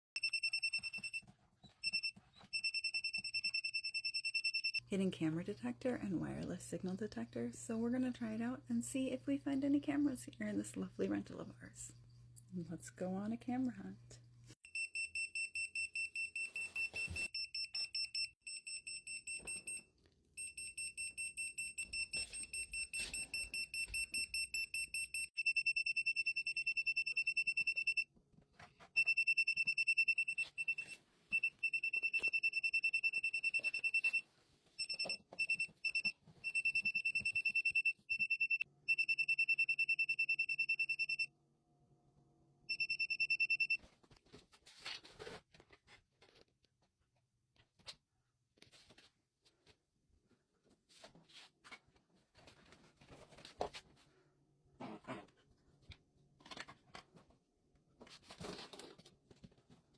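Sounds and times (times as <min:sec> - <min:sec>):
detector alarm beeping: 0:00.2 - 0:01.2, 0:01.8 - 0:04.8, 0:14.7 - 0:19.8, 0:20.4 - 0:28.0, 0:29.0 - 0:34.2, 0:34.8 - 0:41.3, 0:42.7 - 0:43.8.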